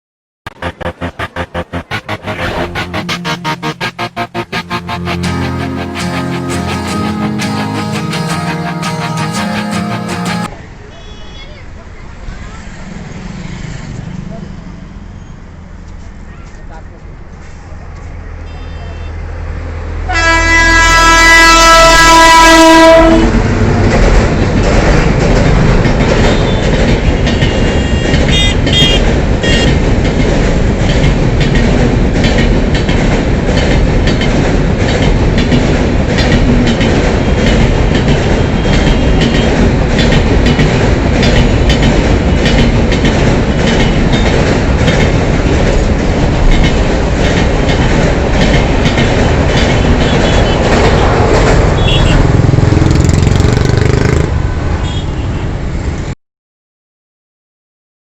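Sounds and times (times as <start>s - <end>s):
locomotive horn blast: 0.6s - 10.5s, 20.1s - 23.4s, 27.3s - 29.8s
train wheels clattering over rail joints: 23.6s - 51.8s.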